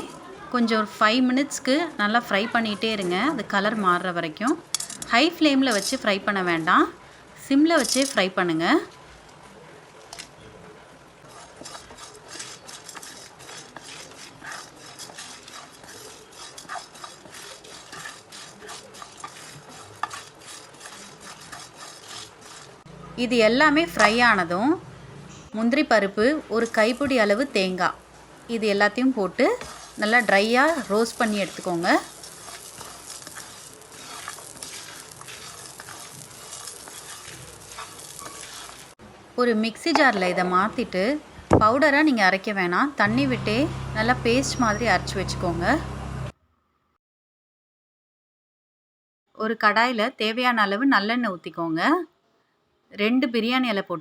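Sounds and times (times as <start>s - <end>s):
spoon scraping a pan: 2.4s - 7.0s, 7.8s - 8.3s, 11.2s - 24.7s, 26.2s - 27.8s, 28.6s - 39.0s, 39.8s - 41.0s, 43.0s - 46.3s
seeds rattling against a pan: 4.6s - 6.8s, 7.7s - 8.3s, 11.2s - 22.8s, 23.8s - 24.4s, 29.3s - 39.0s.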